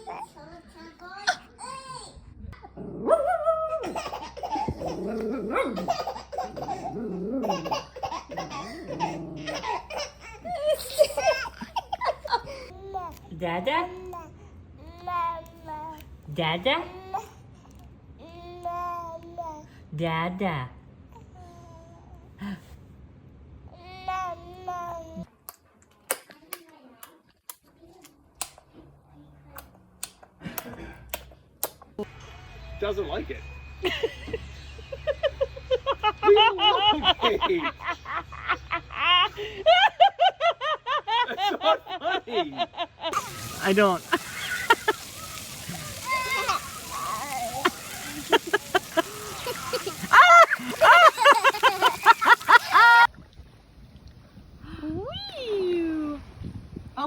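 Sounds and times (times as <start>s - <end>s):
young child laughing: 3.5s - 12.7s, 43.1s - 53.1s.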